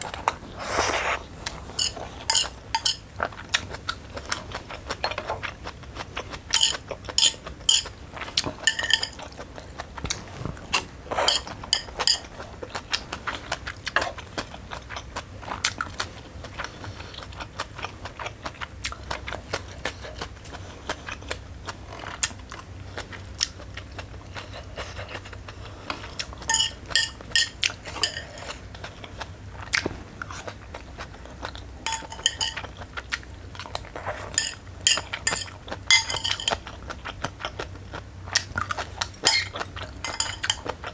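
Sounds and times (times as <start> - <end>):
cutlery clinking against a bowl: 1.6 - 3.1, 4.9 - 5.4, 6.5 - 9.4, 10.8 - 12.4, 26.5 - 28.6, 31.9 - 32.8, 34.0 - 36.7, 38.6 - 40.9.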